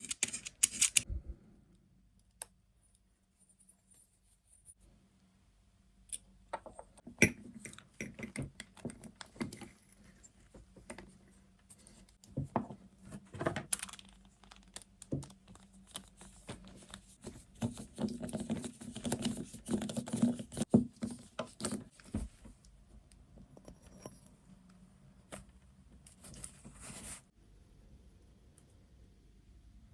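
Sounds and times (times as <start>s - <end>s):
metal parts clicking and clinking: 0.0s - 1.0s.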